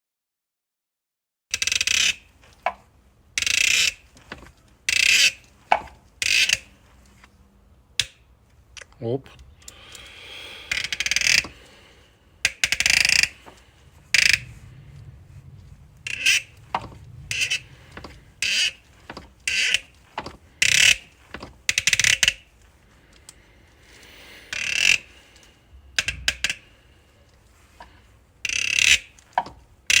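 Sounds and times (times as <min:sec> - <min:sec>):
glow plug creaking and squeaking: 0:06.2 - 0:06.7, 0:09.4 - 0:11.7, 0:12.4 - 0:22.8, 0:24.5 - 0:25.1, 0:25.9 - 0:26.7, 0:27.7 - 0:30.0.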